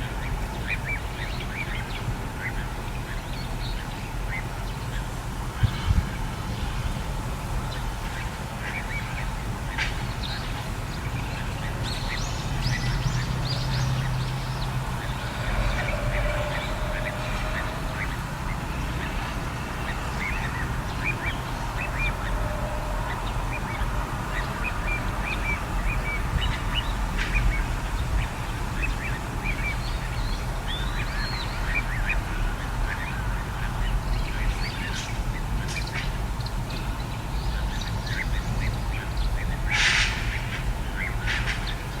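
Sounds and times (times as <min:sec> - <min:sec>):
steady low rumble: 0:00.0 - 0:42.0
plovers chirping: 0:07.7 - 0:36.6.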